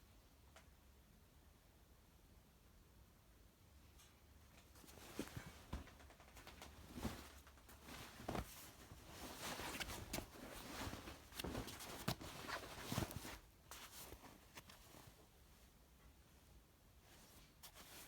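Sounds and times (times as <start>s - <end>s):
handling rustling: 4.7s - 15.5s, 17.1s - 18.0s.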